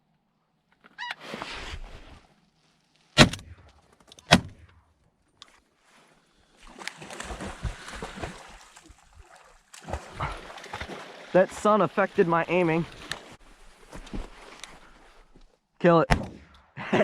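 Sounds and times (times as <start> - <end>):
rustling noise: 1.1 - 4.1, 12.8 - 15.6
shotgun shots: 3.2 - 3.6, 16.1 - 16.7.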